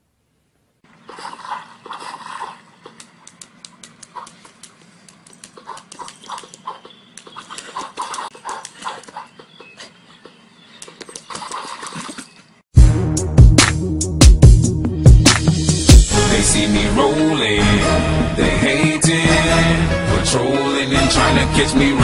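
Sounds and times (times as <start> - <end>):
sharp clicks and taps: 2.9 - 9.2.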